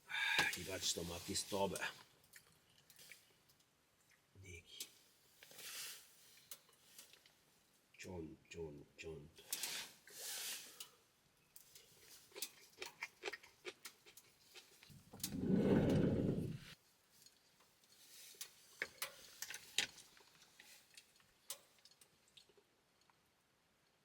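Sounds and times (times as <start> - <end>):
utensils tapping on grill net: 17.2 - 22.1.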